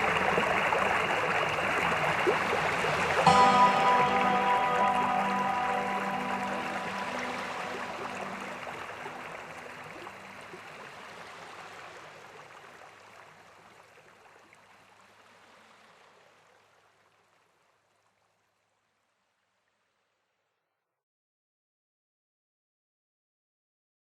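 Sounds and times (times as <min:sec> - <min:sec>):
waterfall rushing: 0:00.0 - 0:11.6.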